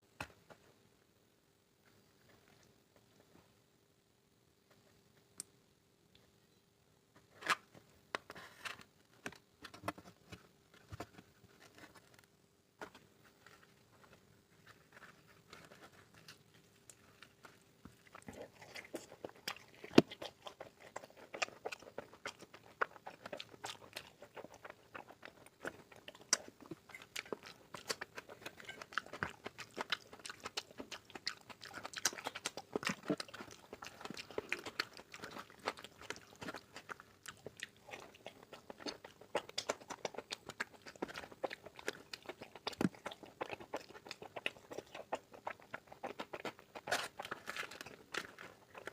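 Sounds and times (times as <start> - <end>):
faint steady hum: 0.0 - 48.9
chewing and mouth smacks: 14.9 - 48.9.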